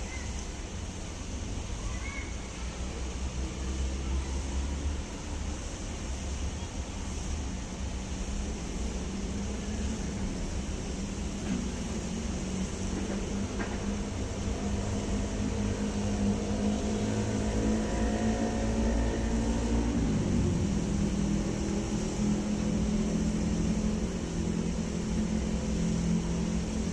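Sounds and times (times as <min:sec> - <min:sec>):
low mechanical drone: 0:03.0 - 0:26.9.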